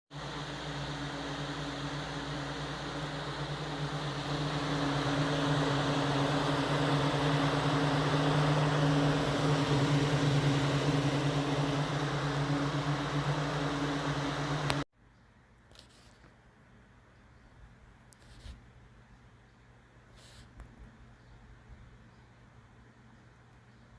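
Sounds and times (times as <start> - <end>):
fan motor humming: 0.1 - 14.8
rush of air from fan blades: 0.1 - 14.8.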